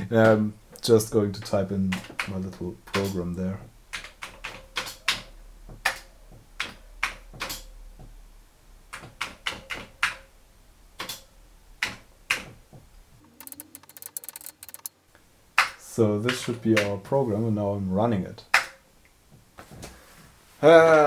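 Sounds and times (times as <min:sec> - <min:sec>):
keyboard keys clicking: 0:13.3 - 0:14.9
quick rattle of fine clicks: 0:13.3 - 0:14.9.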